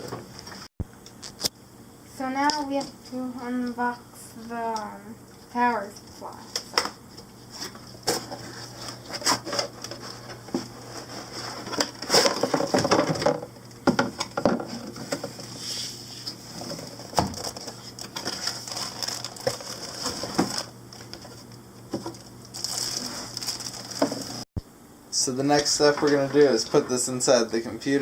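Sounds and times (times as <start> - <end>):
cardboard packaging handled: 7.5 - 13.4, 16.4 - 24.4.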